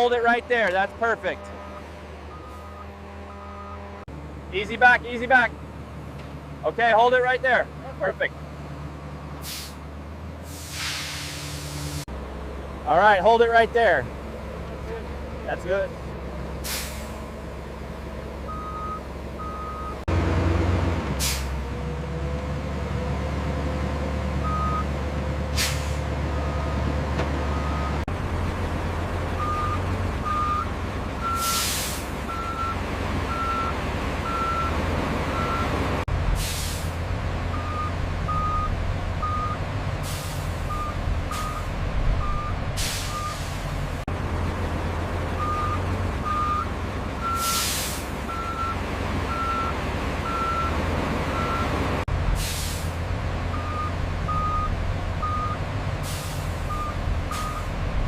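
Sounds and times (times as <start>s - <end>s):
diesel engine running: 0.0s - 58.0s
truck backup alarm beeping: 1.4s - 4.0s, 18.4s - 20.1s, 24.2s - 25.1s, 25.8s - 28.1s, 29.3s - 36.0s, 37.5s - 43.6s, 45.3s - 52.1s, 53.5s - 57.8s
air brake hissing: 9.4s - 9.8s, 10.4s - 12.1s, 16.6s - 17.4s, 21.2s - 21.6s, 25.5s - 26.1s, 31.4s - 32.2s, 36.4s - 37.0s, 40.0s - 40.7s, 42.8s - 43.7s, 47.4s - 48.2s, 52.4s - 53.0s, 56.0s - 56.6s.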